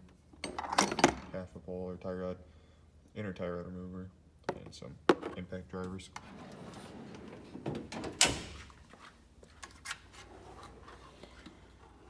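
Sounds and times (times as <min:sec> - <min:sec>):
metal drawer sliding shut: 0:06.2 - 0:08.8.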